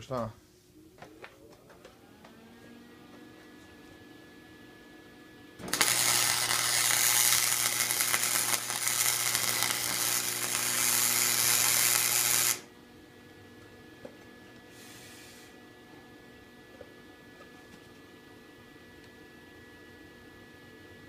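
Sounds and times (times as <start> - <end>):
low electrical hum: 0.0 - 21.0
arc welder crackling and sizzling: 5.6 - 12.7.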